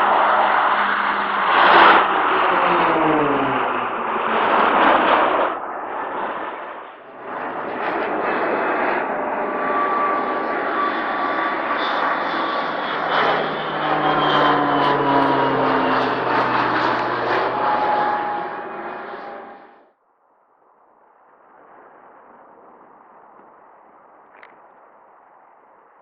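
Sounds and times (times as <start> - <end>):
aircraft engine drone: 0.0 - 20.0
aircraft passing: 0.0 - 20.0.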